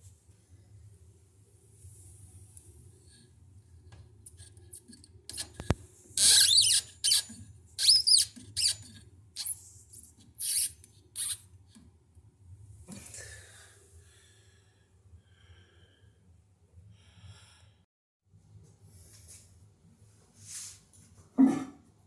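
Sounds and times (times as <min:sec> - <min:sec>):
high-pitched squeaks and scrapes: 0:04.2 - 0:11.4.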